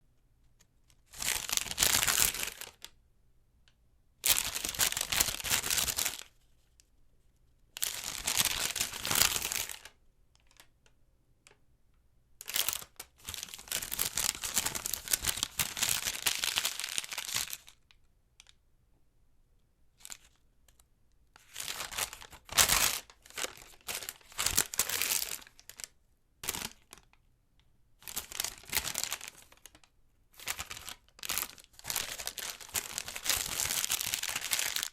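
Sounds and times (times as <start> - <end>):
paper receipt crinkling: 21.4 - 27.1, 28.0 - 34.9.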